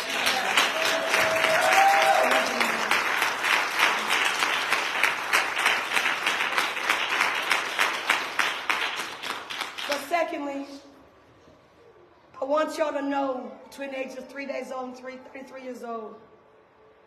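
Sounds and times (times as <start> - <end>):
crowd clapping: 0.0 - 10.3.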